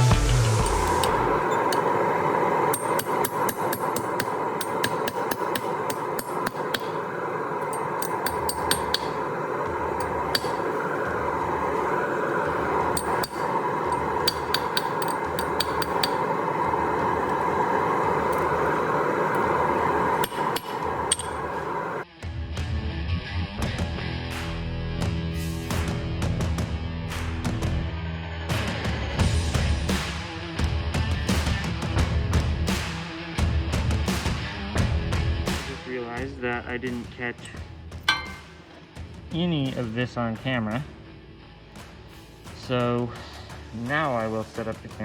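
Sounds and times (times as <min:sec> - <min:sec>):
metal grinding: 0:00.0 - 0:22.0
sharp metallic clicks and taps: 0:02.7 - 0:10.8, 0:12.9 - 0:17.4, 0:20.2 - 0:21.7.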